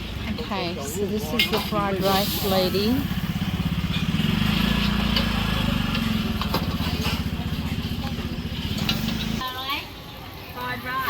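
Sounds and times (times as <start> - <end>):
small engine chugging: 1.8 - 9.4.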